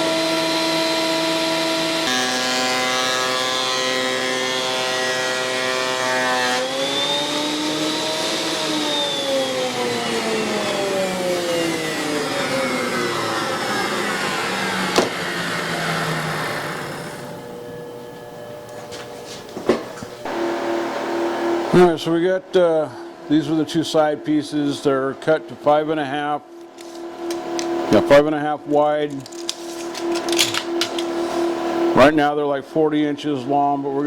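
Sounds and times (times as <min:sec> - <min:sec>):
power tool motor whining: 0:00.0 - 0:21.8.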